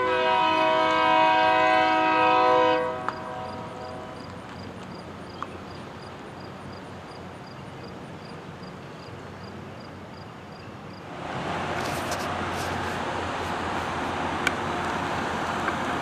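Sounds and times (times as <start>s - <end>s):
diesel locomotive engine humming: 0.0s - 16.0s
loud rushing noise: 11.1s - 16.0s.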